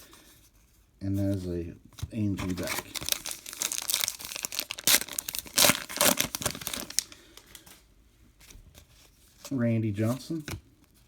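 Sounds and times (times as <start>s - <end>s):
rustles of cards handled: 0.1s - 11.0s
wrapper crinkling and tearing: 2.4s - 7.6s.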